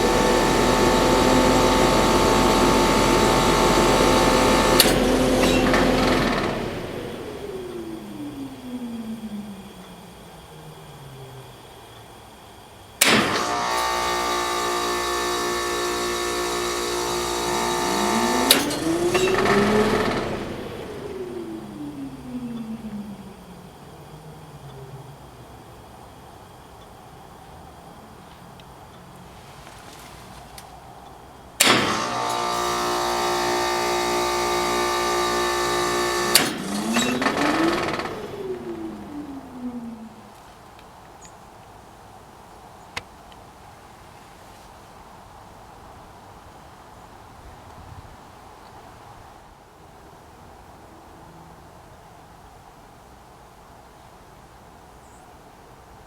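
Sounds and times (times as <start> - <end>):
heat pump thunk: 0.0 - 8.4, 13.0 - 22.0, 31.6 - 39.5
electrical hum: 0.0 - 29.3, 31.4 - 40.6
fan whir winding down: 0.0 - 29.3, 31.5 - 40.7.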